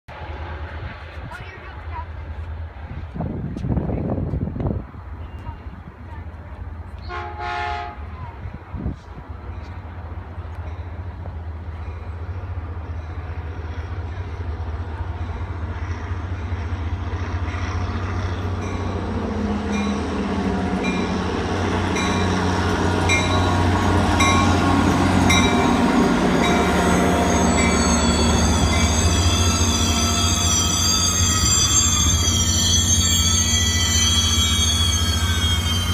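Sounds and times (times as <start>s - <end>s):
diesel locomotive hum: 0.1s - 35.9s
high wavering wheel squeal: 26.6s - 35.9s.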